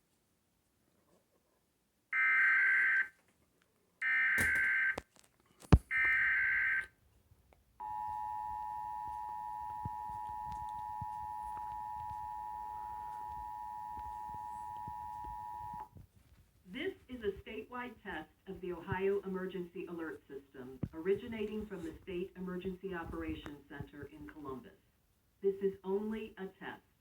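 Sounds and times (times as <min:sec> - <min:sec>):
steady two-tone attention signal: 0:07.8 - 0:15.9.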